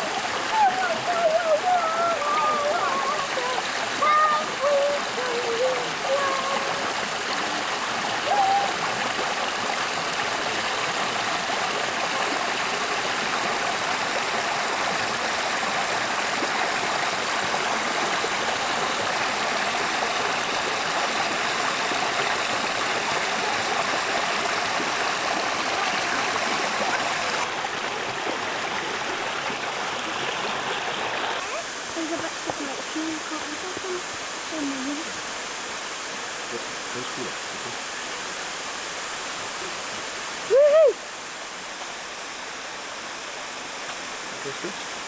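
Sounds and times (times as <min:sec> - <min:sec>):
stream running water: 0:00.0 - 0:45.0.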